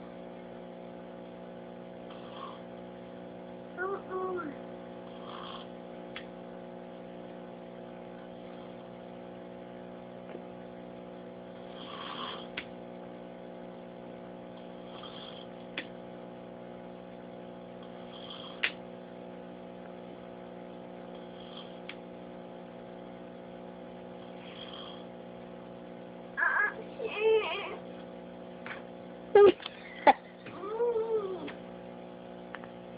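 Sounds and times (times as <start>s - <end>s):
electrical hum: 0.0s - 32.9s
person snoring softly: 2.1s - 2.7s, 5.0s - 5.8s, 11.6s - 12.6s, 14.7s - 15.6s, 17.9s - 18.8s, 21.1s - 21.9s, 24.2s - 25.2s.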